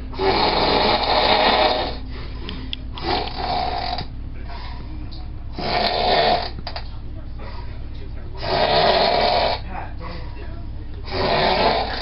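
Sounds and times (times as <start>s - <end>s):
faint low hum: 0.0s - 12.0s
person snoring heavily: 0.1s - 2.0s, 3.0s - 4.1s, 5.6s - 6.6s, 8.4s - 9.6s, 11.1s - 12.0s.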